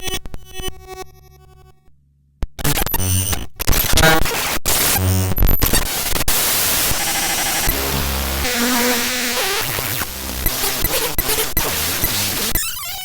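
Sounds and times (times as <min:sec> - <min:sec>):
electronic static noise: 0:02.6 - 0:13.0.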